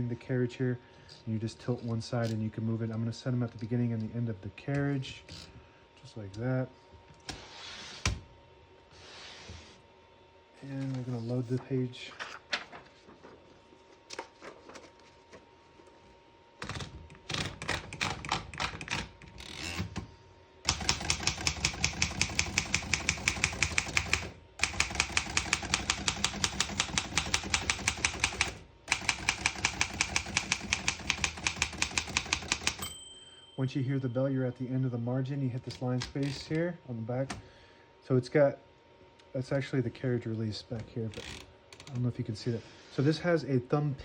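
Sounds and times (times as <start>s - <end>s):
fast typewriter typing: 16.6s - 19.8s, 20.7s - 32.8s
typewriter page feed rattling: 20.7s - 32.8s.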